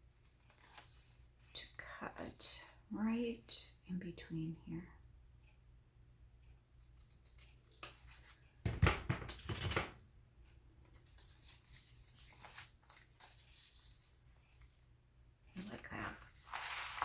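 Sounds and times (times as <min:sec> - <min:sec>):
paper rustling: 0:00.2 - 0:01.3, 0:09.2 - 0:14.9, 0:15.6 - 0:17.0.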